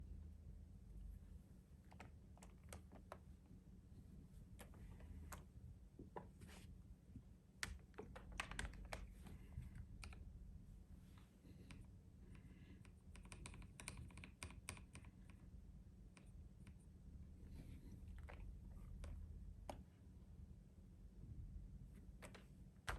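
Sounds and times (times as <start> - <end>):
mechanical keyboard typing: 1.8 - 3.3, 7.6 - 9.2, 12.8 - 15.3.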